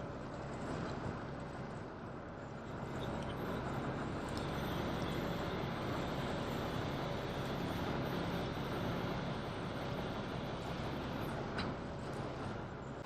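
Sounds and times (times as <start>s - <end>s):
ferry diesel engines droning: 0.0s - 13.0s.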